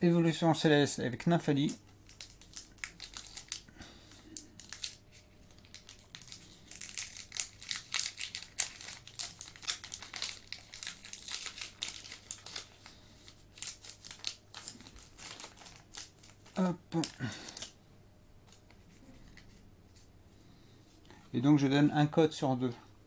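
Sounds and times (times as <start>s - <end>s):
foil wrapper crinkling: 1.6s - 17.8s.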